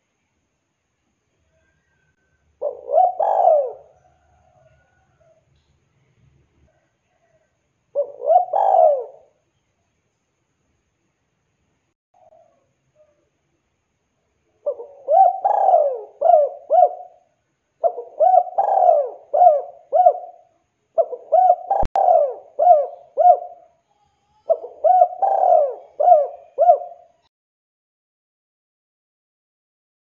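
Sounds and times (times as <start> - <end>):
dove cooing: 2.6 - 5.4, 8.0 - 9.4, 12.2 - 13.2, 14.6 - 27.2.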